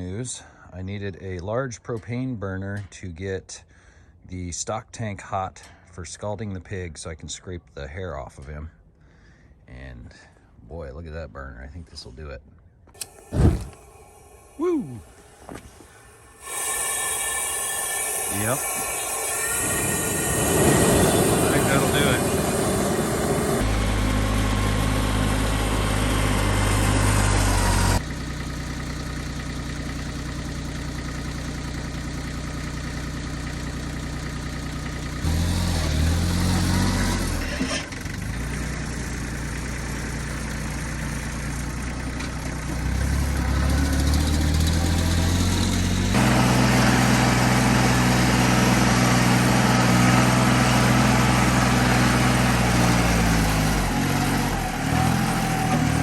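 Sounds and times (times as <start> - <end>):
engine revving: 13.0 - 28.0, 35.1 - 41.4, 42.1 - 56.0.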